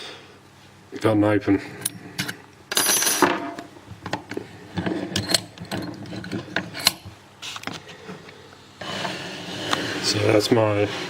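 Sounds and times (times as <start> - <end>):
lock picking tool scrape: 4.8 - 7.1.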